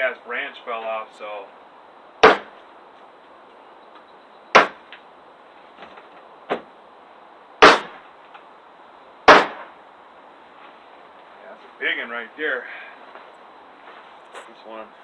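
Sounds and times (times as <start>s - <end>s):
hatchet chopping wood: 2.2s - 2.6s, 4.6s - 4.8s, 7.6s - 8.0s, 9.3s - 9.7s.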